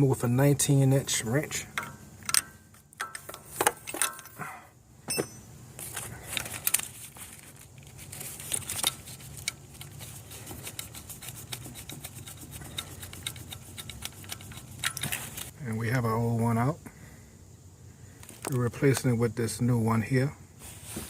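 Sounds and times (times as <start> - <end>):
wrench clinking and scraping on metal: 1.5 - 4.4, 5.1 - 15.5.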